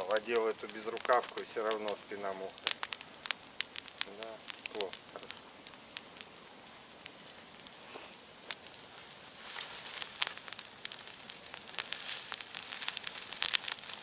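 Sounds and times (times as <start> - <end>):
bonfire crackling and popping: 0.0 - 14.0.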